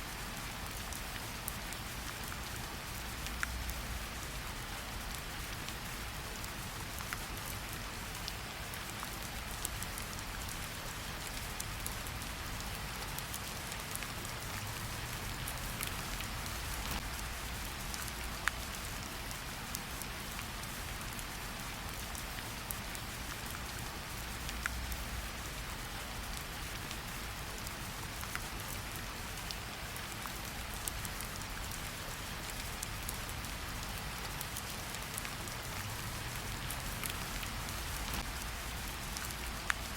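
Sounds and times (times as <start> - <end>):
steady rain hiss: 0.0 - 39.9
raindrop ticks: 3.2 - 3.8, 11.2 - 20.4, 24.2 - 27.6, 28.2 - 28.7, 29.4 - 31.8, 32.4 - 39.9.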